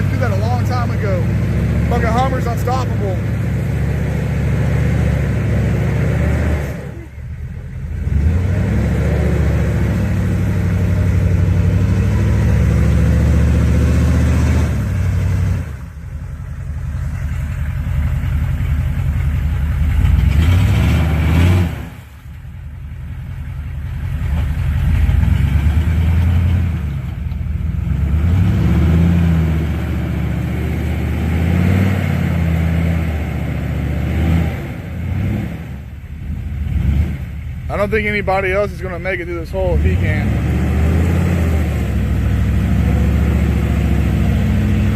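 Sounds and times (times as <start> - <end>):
engine revving hard: 0.0 - 15.8, 19.8 - 22.0, 27.8 - 44.9.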